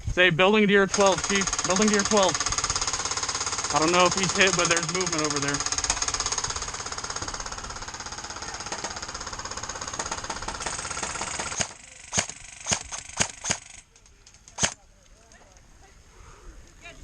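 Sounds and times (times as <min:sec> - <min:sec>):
rapid full-auto airsoft fire: 0:00.9 - 0:13.8, 0:14.6 - 0:14.8
sharp single airsoft shots: 0:11.1 - 0:13.7.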